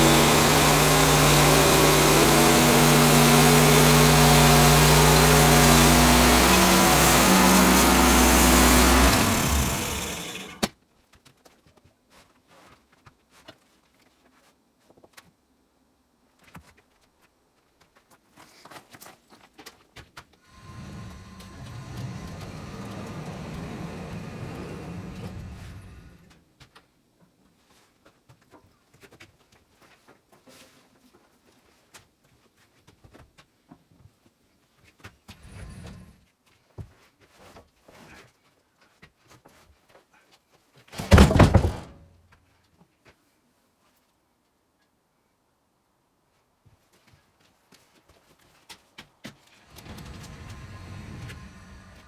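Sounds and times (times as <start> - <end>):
engine shutoff click: 0.0 - 10.7, 20.6 - 26.2
gas engine running: 0.0 - 10.7, 20.5 - 26.3, 41.0 - 42.0, 49.7 - 52.0.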